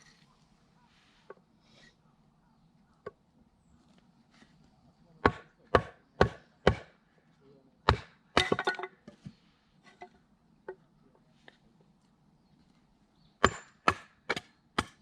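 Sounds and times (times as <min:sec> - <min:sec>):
axe chopping firewood: 0:05.2 - 0:07.0, 0:07.8 - 0:08.9, 0:13.4 - 0:15.0.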